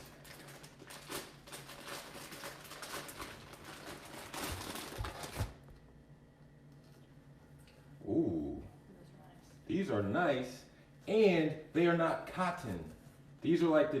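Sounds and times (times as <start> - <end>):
packaging rustling and crinkling: 0.0 - 5.6.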